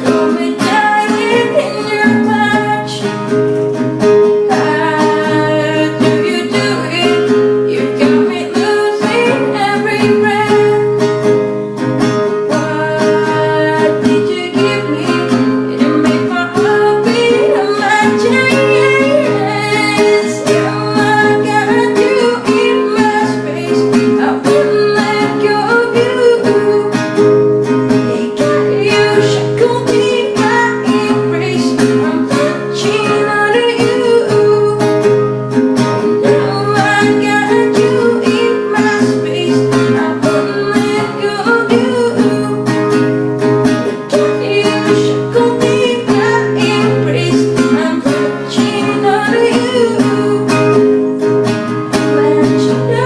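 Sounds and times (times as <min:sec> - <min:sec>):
acoustic guitar playing: 0:00.0 - 0:53.0
person singing: 0:00.0 - 0:53.0.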